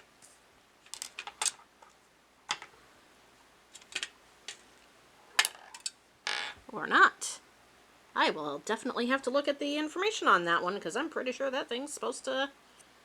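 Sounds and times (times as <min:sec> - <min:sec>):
small plastic parts clicking: 0:00.8 - 0:01.9, 0:05.4 - 0:06.0.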